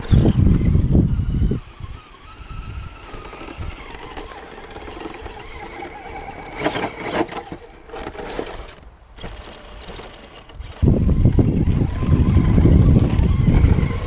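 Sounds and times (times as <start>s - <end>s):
wind buffeting microphone: 0.0s - 6.5s, 10.5s - 14.0s
electric motor and gears whining: 0.0s - 14.0s.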